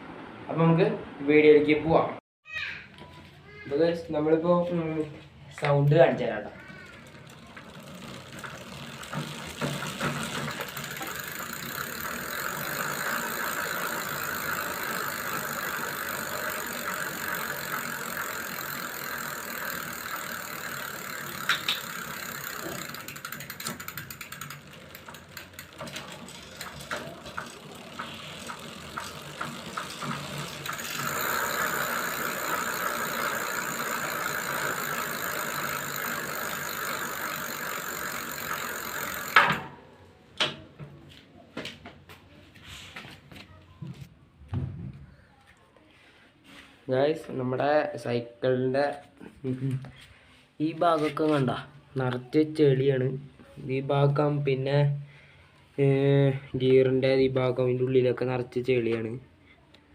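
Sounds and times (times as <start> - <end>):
bike chain and gears rattling: 5.8 - 39.7
freewheel ratchet clicks: 6.9 - 39.7.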